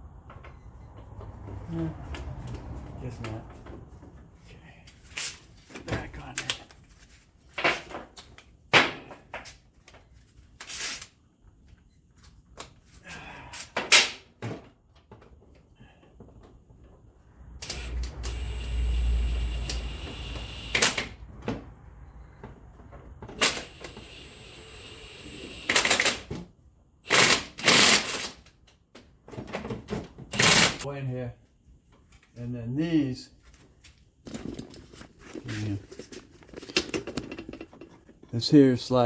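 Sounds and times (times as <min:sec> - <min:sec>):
steady mechanical noise: 0:17.6 - 0:21.2, 0:23.3 - 0:26.3.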